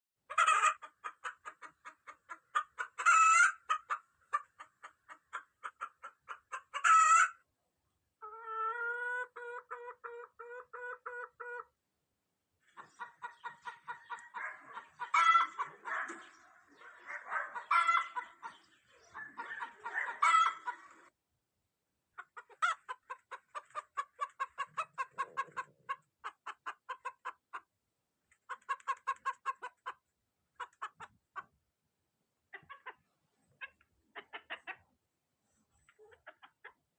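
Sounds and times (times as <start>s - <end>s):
hens clucking: 0.3s - 7.4s, 8.2s - 11.7s, 12.7s - 21.1s, 22.2s - 27.7s, 28.3s - 31.6s, 32.5s - 34.9s, 35.8s - 36.8s
hens squawking cackles: 0.3s - 7.4s, 8.2s - 11.7s, 12.7s - 21.1s, 22.2s - 27.7s, 28.4s - 30.0s, 30.6s - 31.5s, 32.5s - 34.9s.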